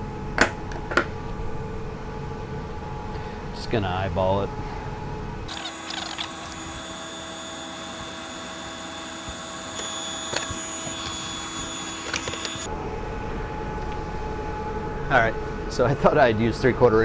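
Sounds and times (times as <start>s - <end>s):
electric motor running: 5.5s - 12.7s.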